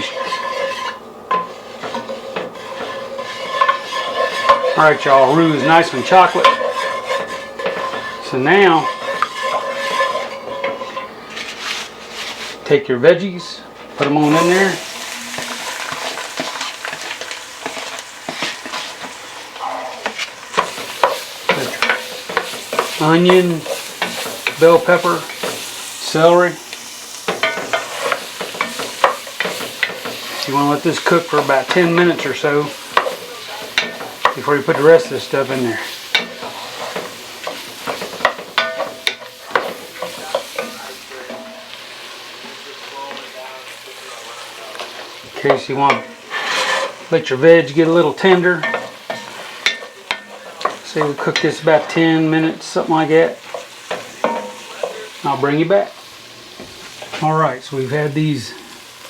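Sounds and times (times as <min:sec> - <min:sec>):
spoon scraping against a pot: 0:00.0 - 0:12.6, 0:14.2 - 0:43.3, 0:44.3 - 0:52.1
vegetables sizzling in a pot: 0:00.0 - 0:59.0.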